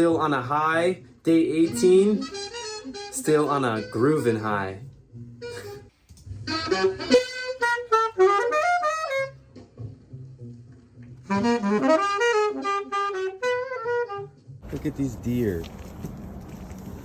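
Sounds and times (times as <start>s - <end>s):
saxophone playing bebop phrases: 1.6s - 10.2s, 11.2s - 14.5s.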